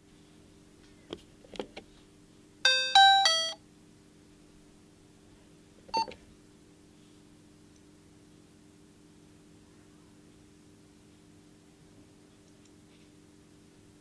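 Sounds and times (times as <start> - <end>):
faint steady hum: 0.0 - 14.0
brief tone: 2.7 - 3.6
electronic doorbell chime: 2.7 - 3.6.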